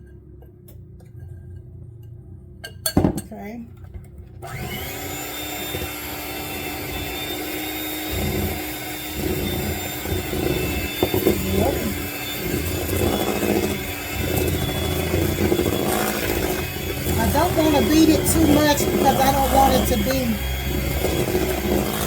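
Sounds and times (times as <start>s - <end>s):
electric hand mixer running: 4.4s - 22.0s.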